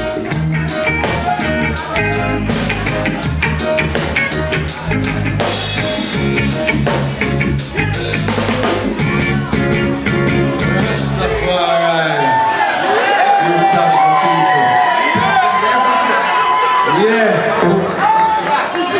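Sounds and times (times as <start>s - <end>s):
drum rimshots: 0.0s - 11.5s
reggae band playing: 0.0s - 11.8s.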